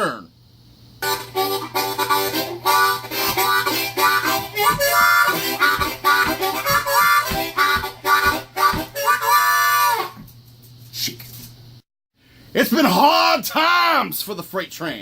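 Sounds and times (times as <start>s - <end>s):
harmonica playing chords: 1.0s - 10.2s.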